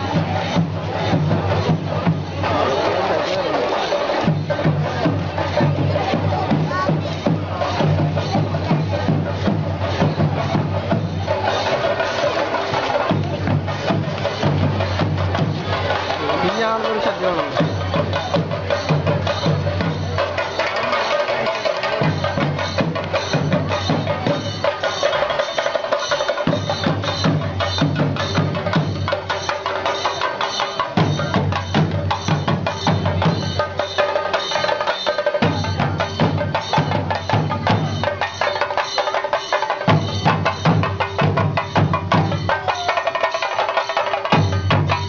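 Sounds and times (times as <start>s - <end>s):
deep drum part: 0.0s - 25.0s
rapid wood-block drumming: 0.0s - 45.0s.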